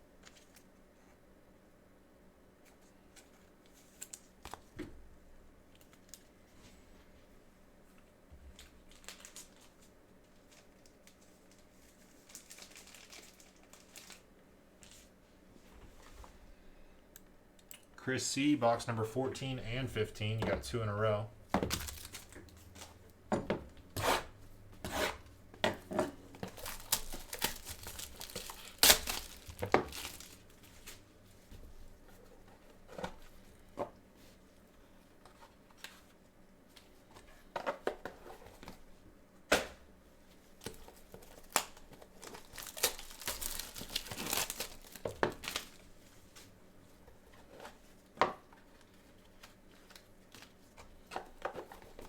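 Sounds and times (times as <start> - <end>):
plastic packaging tearing and crinkling: 8.5 - 15.1, 21.6 - 23.0, 26.3 - 31.0, 40.7 - 45.9.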